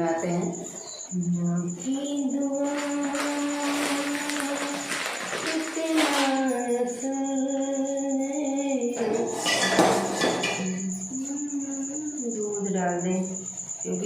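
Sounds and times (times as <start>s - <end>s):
pulsing cricket trill: 0.0s - 14.0s
woman singing long held notes: 1.1s - 9.3s, 10.6s - 13.3s
rustling noise: 2.7s - 6.5s.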